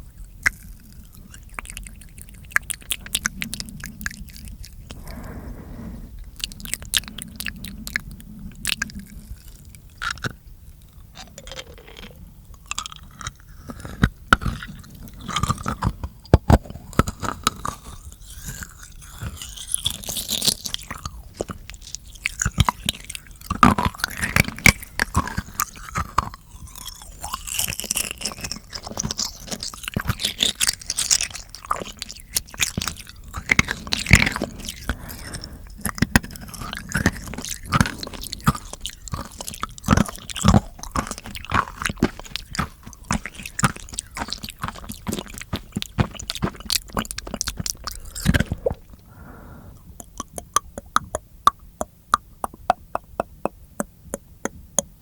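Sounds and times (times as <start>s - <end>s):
wet mouth clicking and chewing: 0.0s - 5.4s, 6.2s - 55.0s.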